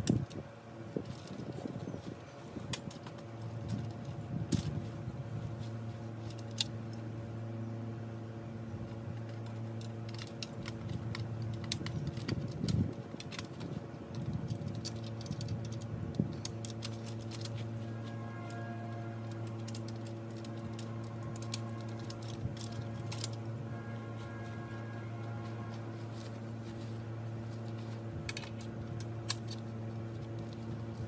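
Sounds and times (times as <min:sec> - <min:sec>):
steady low hum: 0:00.0 - 0:31.0
metallic clicks and clinks: 0:18.5 - 0:23.5.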